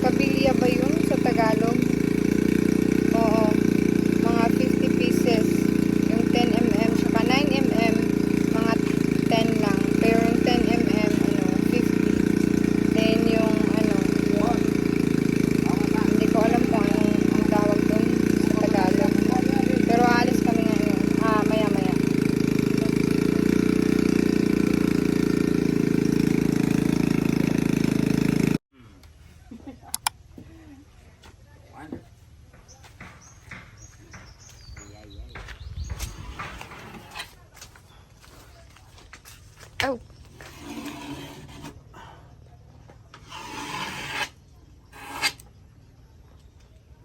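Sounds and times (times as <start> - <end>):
vehicle engine running steadily: 0.0 - 28.6
rasping scraping strokes: 36.0 - 37.4, 40.3 - 41.8, 43.1 - 45.5.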